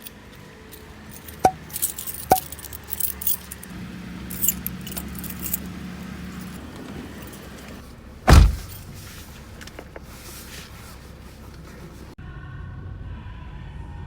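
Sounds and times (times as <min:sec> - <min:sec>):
low steady hum: 0:00.0 - 0:12.2
sharp ringing clinks: 0:00.8 - 0:07.8.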